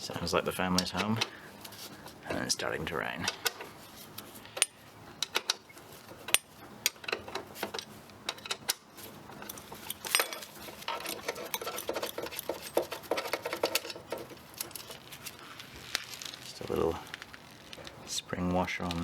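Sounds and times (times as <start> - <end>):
spanner clicking on metal nut: 4.6 - 5.6, 6.3 - 15.0.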